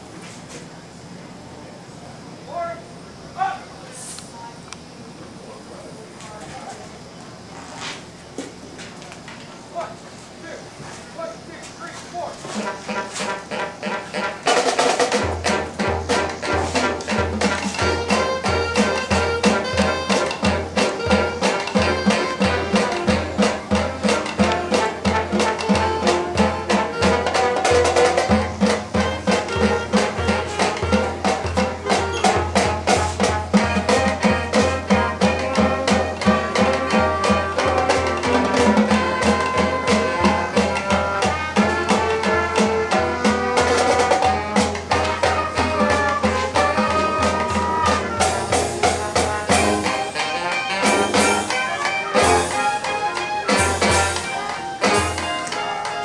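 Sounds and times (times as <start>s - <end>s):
marching band playing: 12.4s - 56.0s
brass melody: 12.5s - 56.0s
drum-line beat: 12.6s - 56.0s.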